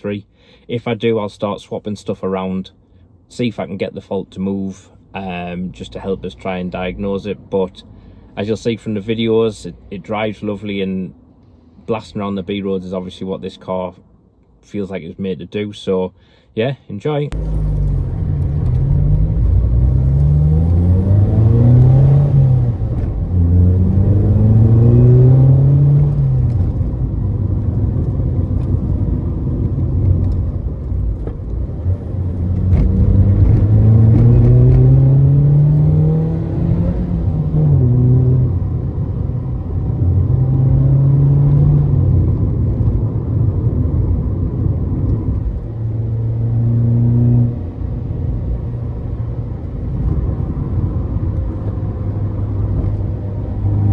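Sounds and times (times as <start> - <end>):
car engine accelerating through gears: 17.3 - 53.9.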